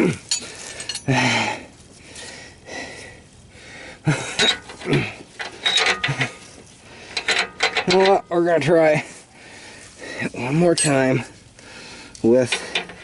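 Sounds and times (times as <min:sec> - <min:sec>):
person grunting: 0:00.0 - 0:00.3
metal hand tools clinking: 0:00.3 - 0:01.1, 0:04.4 - 0:06.6, 0:10.6 - 0:11.2.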